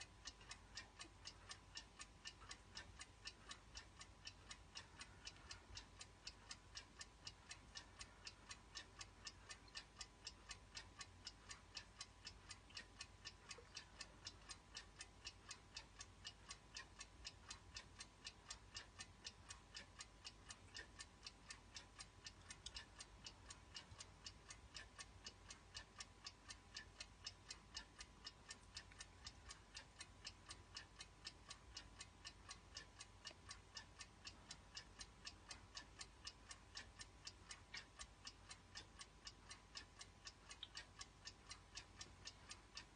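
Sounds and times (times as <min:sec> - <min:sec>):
alarm clock ticking: 0:00.0 - 0:42.9.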